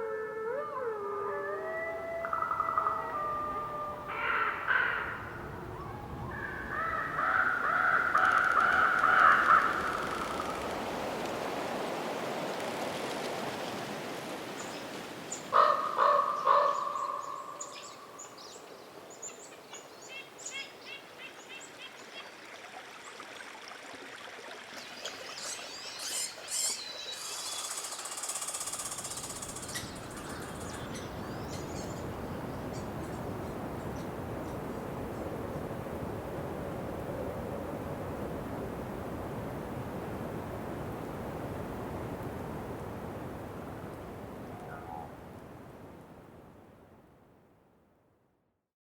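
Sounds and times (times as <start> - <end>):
steady wind hiss: 0.8 - 47.7
corvid cawing: 4.1 - 5.5, 6.2 - 10.2, 15.5 - 17.7.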